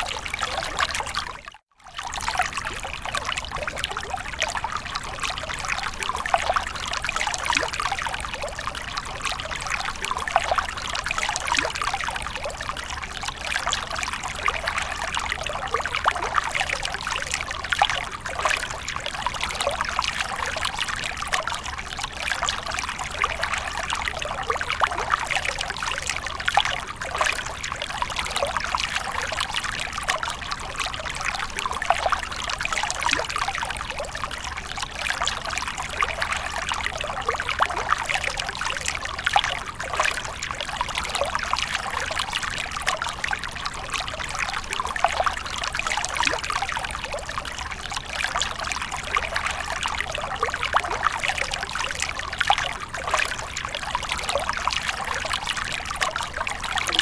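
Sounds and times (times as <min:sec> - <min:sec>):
water running and splashing: 0:50.2 - 0:57.0.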